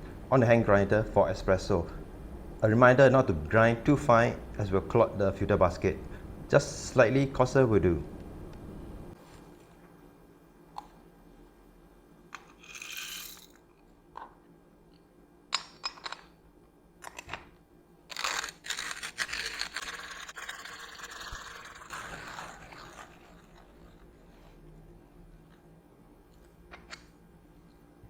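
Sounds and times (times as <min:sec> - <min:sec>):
hand coffee grinder grinding: 0:18.1 - 0:24.4.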